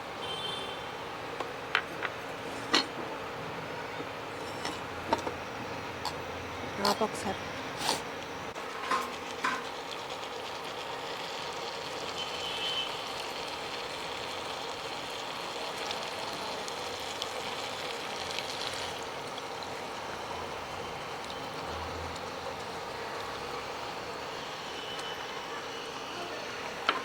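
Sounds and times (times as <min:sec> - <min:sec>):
onions sizzling in oil: 0:00.1 - 0:27.0.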